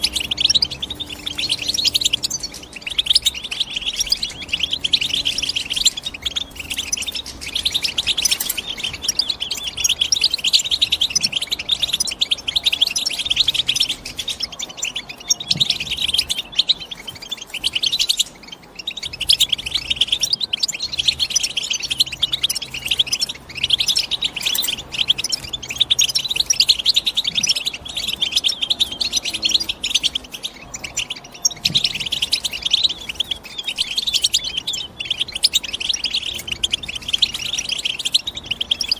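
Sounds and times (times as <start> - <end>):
goldfinch twittering song: 0.0 - 38.9.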